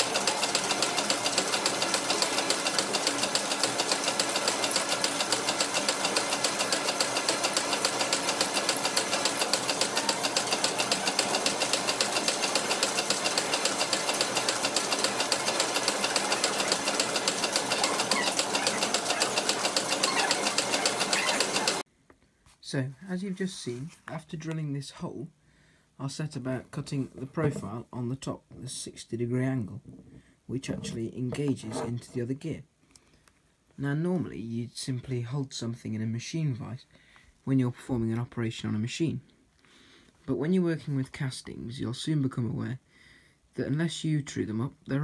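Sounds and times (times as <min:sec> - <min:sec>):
drilling machine clattering: 0:00.0 - 0:21.8.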